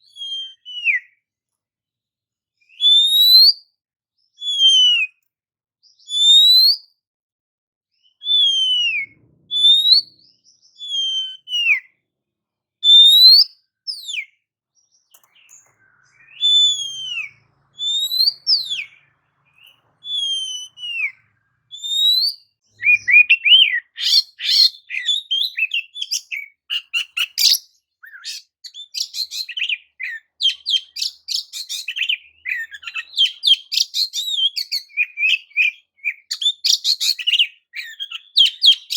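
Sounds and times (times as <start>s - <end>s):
bird singing whistled notes: 0.0s - 1.2s, 2.6s - 5.2s, 5.8s - 7.0s, 8.0s - 12.0s, 12.8s - 38.9s
bird chattering song: 8.0s - 12.0s, 12.8s - 38.9s.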